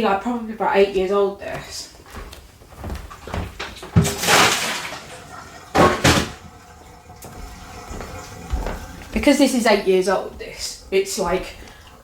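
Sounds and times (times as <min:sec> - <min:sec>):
meltwater splash: 0:04.0 - 0:08.3
fridge freezer clunk: 0:05.7 - 0:06.5.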